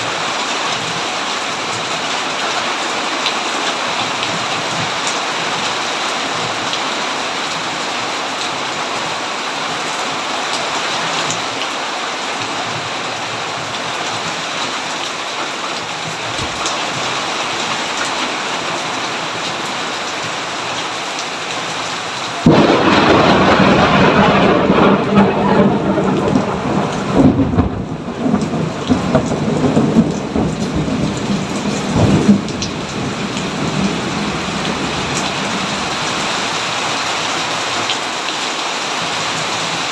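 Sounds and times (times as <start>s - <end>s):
steady rain falling: 0.0s - 39.9s
thunderclap rumbling: 22.4s - 36.2s.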